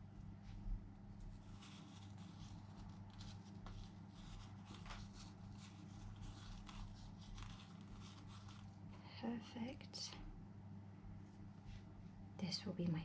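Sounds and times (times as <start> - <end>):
low electrical hum: 0.0 - 13.0
food rolled in seeds rustling: 0.1 - 9.0.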